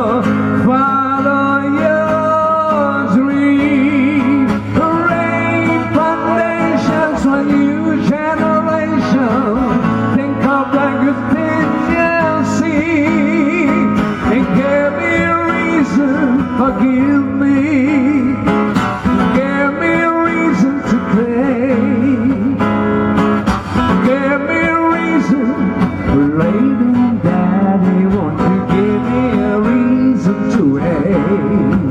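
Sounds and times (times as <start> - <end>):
acoustic guitar: 0.0 - 31.9
man singing: 0.0 - 31.9.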